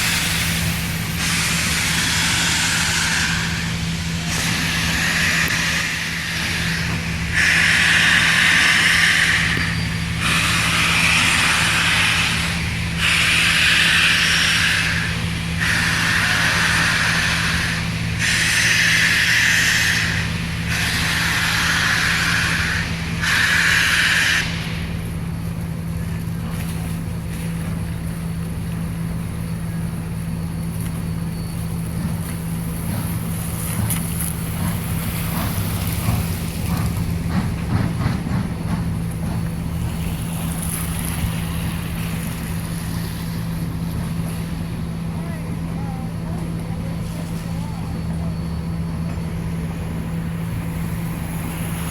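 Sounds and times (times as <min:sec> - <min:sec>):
steam hissing bursts: 0:00.0 - 0:25.3, 0:32.0 - 0:43.5, 0:49.4 - 0:51.9
soft steady steam rush: 0:00.0 - 0:51.9.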